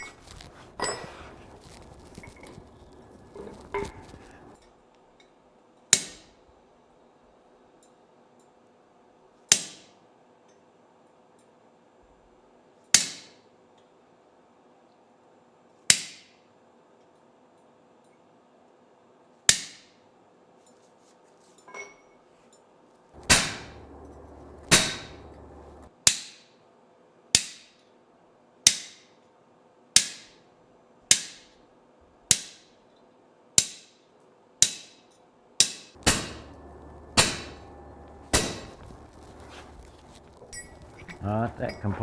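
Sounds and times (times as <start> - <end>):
hammer striking chisel on steel: 23.2 - 25.9, 35.6 - 41.9.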